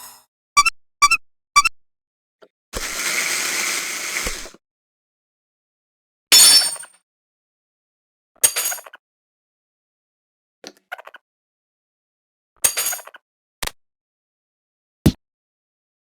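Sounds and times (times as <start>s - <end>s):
cartoon pings: 0.6s - 1.7s.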